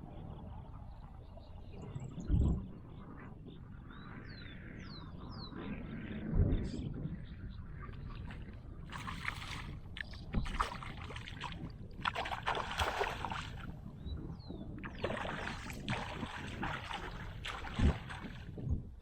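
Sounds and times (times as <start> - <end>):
paddle strokes swishing through water: 8.0 - 13.8, 14.8 - 18.7.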